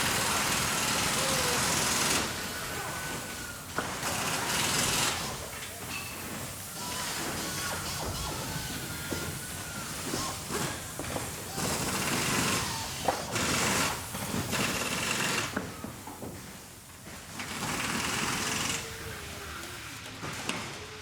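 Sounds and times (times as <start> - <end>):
machinery running: 0.0 - 15.8
bursts of hissing: 0.0 - 20.9.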